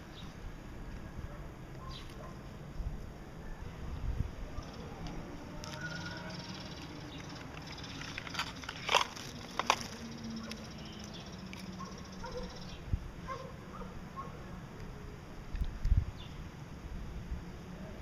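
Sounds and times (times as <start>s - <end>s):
finches chirping faintly: 4.6s - 8.8s, 9.4s - 13.4s.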